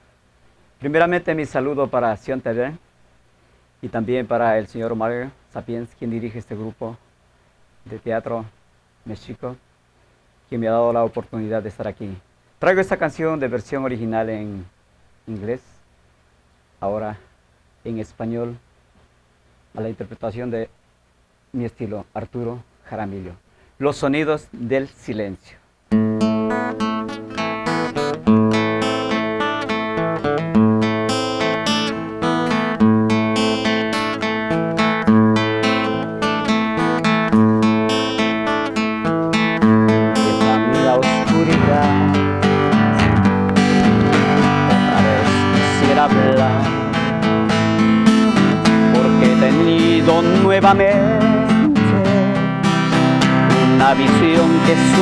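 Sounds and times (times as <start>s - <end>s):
acoustic guitar chords: 25.9s - 55.0s.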